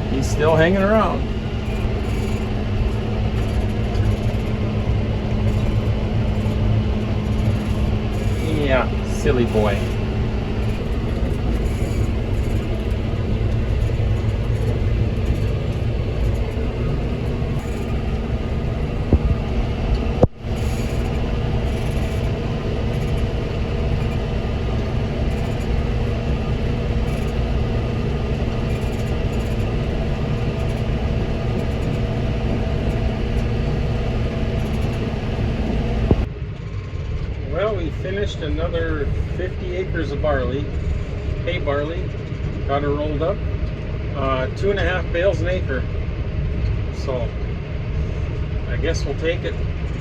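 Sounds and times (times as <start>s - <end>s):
tractor engine running: 0.0s - 36.3s.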